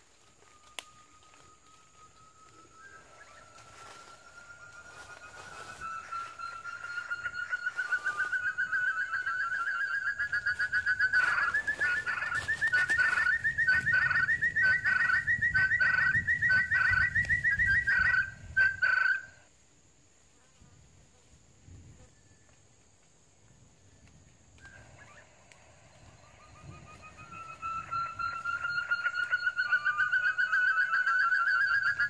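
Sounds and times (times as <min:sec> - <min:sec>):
bird trilling call: 0:02.8 - 0:19.3, 0:26.3 - 0:32.0.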